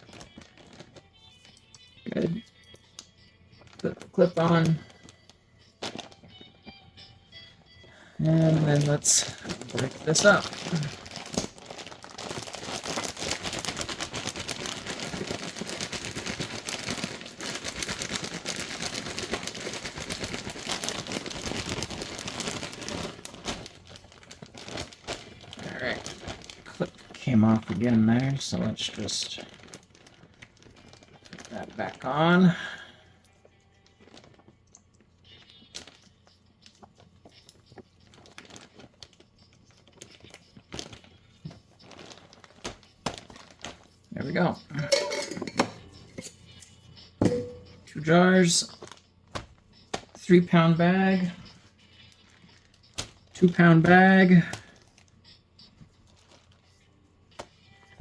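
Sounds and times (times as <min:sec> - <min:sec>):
plastic bag crinkling: 0:00.0 - 0:06.6, 0:07.9 - 0:58.0.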